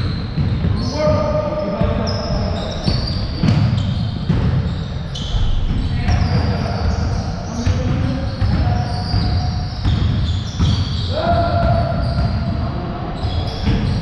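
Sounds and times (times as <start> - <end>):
sneaker squeaks: 0.0 - 14.0
basketball bouncing on hardwood: 1.8 - 4.8, 7.6 - 12.6.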